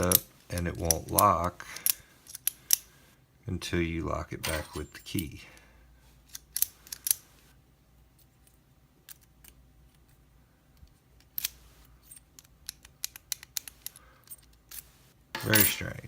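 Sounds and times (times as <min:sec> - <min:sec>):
padlock metallic clicks: 0:12.4 - 0:14.8.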